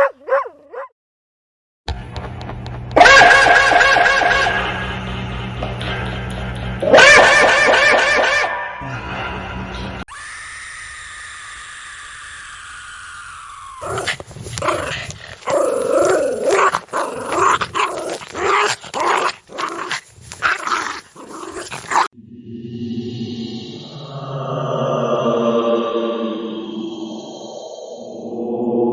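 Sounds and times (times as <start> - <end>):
ghostly growling voice: 8.8 - 10.0, 21.2 - 28.9
eerie tone with gliding pitches: 22.2 - 28.9
low chant-like drone: 22.2 - 28.9.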